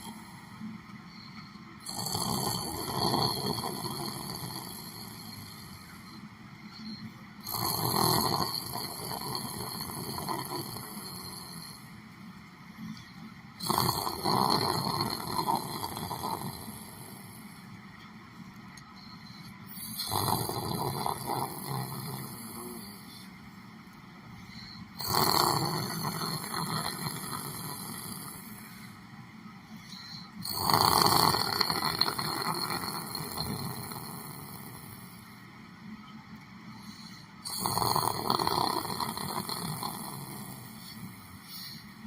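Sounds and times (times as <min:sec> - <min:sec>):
person snoring: 0:01.8 - 0:06.1, 0:06.8 - 0:11.9, 0:13.0 - 0:17.6, 0:19.1 - 0:23.3, 0:24.4 - 0:29.0, 0:29.8 - 0:35.2, 0:36.8 - 0:42.0.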